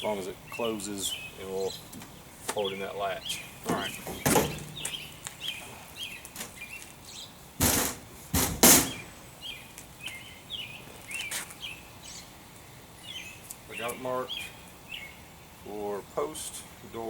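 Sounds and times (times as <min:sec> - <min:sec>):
small bird chirping: 0:00.1 - 0:07.4, 0:08.9 - 0:15.3
loud scratchy noises: 0:07.6 - 0:09.1.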